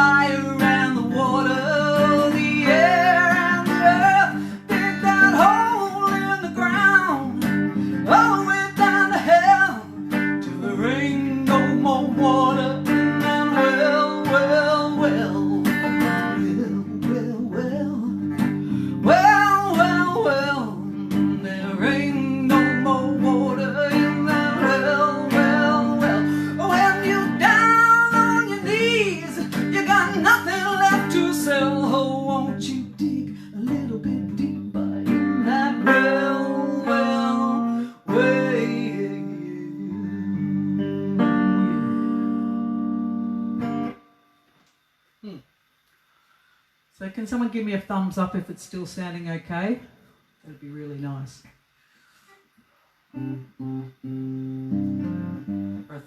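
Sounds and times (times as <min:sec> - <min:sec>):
woman singing: 0:00.0 - 0:42.4
strummed acoustic guitar: 0:00.0 - 0:44.1, 0:53.2 - 0:56.0.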